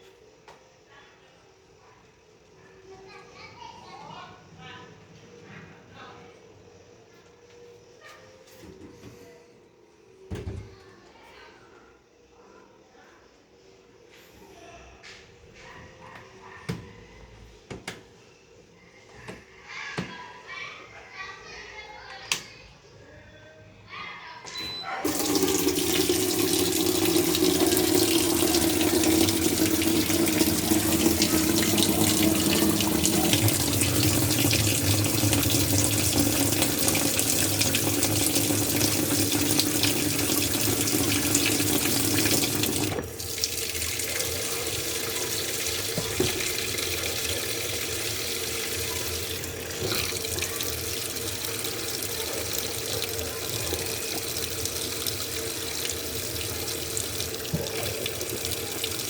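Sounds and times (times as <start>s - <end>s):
water pouring into drum: 25.0s - 59.0s.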